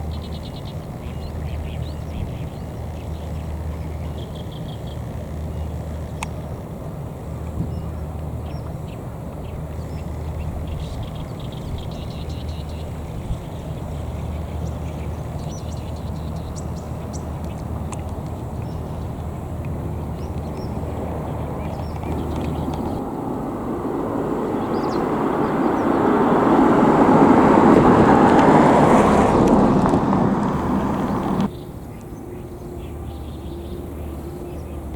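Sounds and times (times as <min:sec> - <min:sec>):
vehicle passing by: 0:09.3 - 0:31.6.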